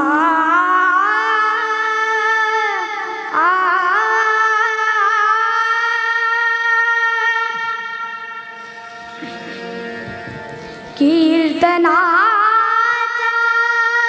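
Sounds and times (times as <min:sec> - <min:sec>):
boy singing wordless phrase: 0:11.0 - 0:14.0.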